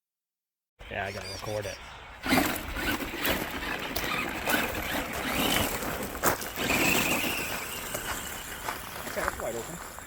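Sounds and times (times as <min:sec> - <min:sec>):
small electric motor whining: 0:02.2 - 0:10.0.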